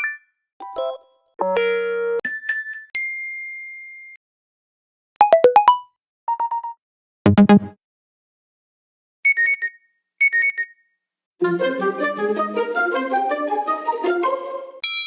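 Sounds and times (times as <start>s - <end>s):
phone alert tones: 5.2s - 7.7s, 9.3s - 10.7s.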